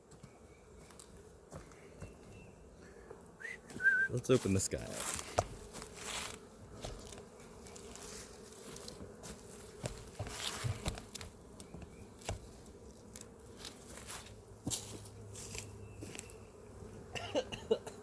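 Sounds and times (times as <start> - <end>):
honeybees buzzing: 0.0 - 18.0
hive clicks and knocks: 8.9 - 13.4.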